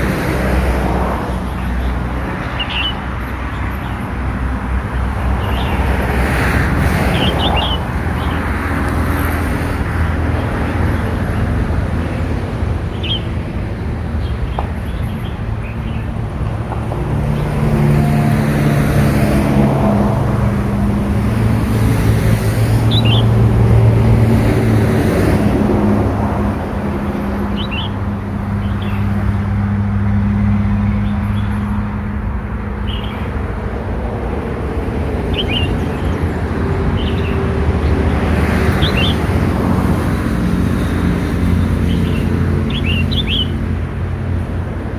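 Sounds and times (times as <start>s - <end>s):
bird chirping: 1.6s - 3.0s, 12.9s - 13.3s, 22.9s - 23.3s, 35.3s - 36.2s, 38.8s - 39.2s, 41.8s - 43.6s.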